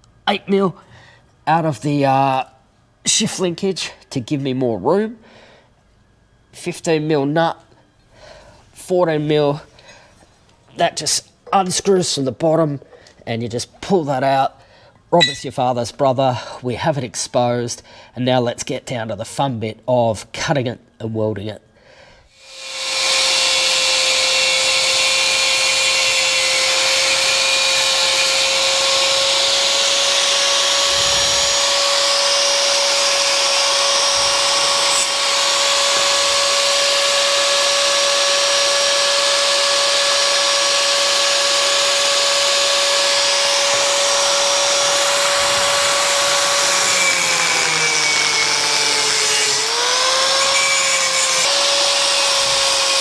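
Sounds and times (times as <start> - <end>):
angle grinder cutting steel: 22.4 - 53.0.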